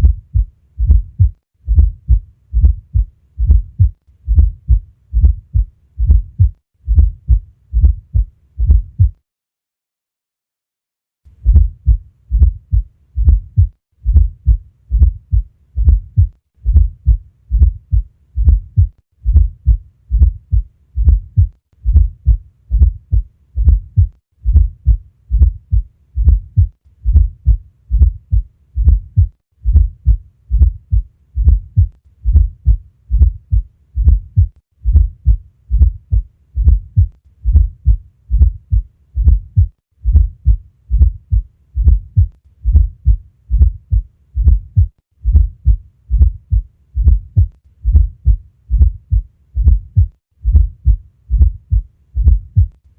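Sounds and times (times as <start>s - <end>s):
heartbeat thuds: 0.0s - 9.2s, 11.4s - 52.8s.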